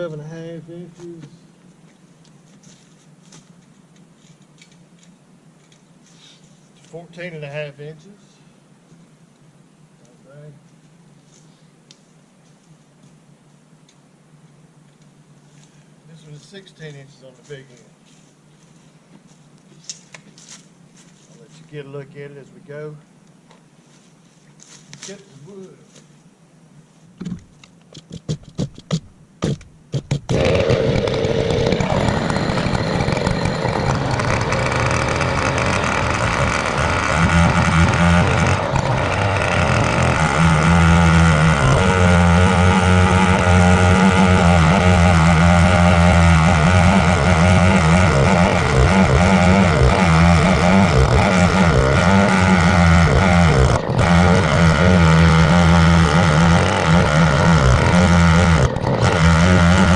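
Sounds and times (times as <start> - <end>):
chainsaw starting: 29.4 - 59.9
chainsaw running and cutting: 30.2 - 59.9.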